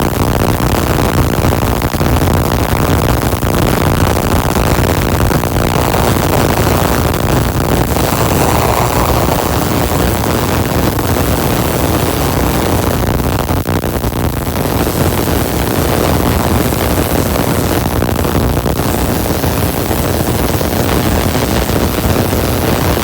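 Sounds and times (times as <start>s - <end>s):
tesla coil rough buzzing: 5.6s - 13.1s.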